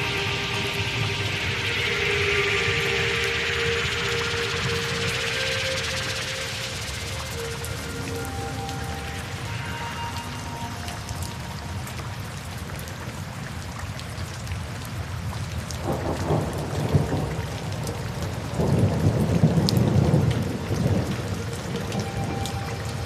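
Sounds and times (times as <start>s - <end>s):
steady rain: 0.0s - 23.0s
rolling thunder: 15.8s - 22.2s.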